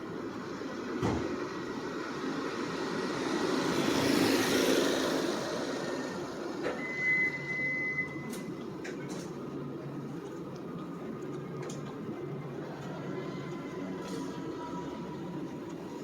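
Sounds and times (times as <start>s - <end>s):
vehicle passing close by: 2.3s - 6.6s.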